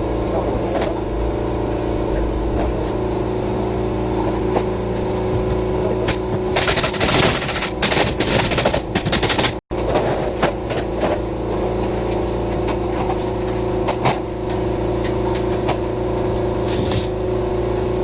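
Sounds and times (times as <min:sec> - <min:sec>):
machine humming: 0:00.0 - 0:09.6
rapid clattering and rattling: 0:06.6 - 0:09.6.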